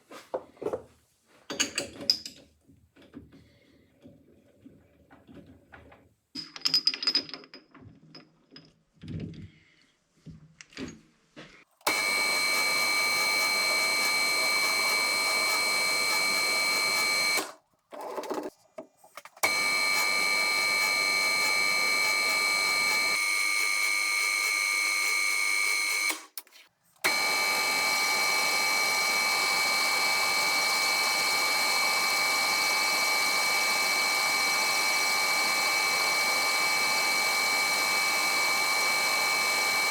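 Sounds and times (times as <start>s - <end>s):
lathe stopping clicks: 11.8s - 17.6s, 19.4s - 26.4s, 27.0s - 39.9s
metal lathe whining: 11.8s - 17.6s, 19.4s - 26.3s, 27.0s - 39.9s.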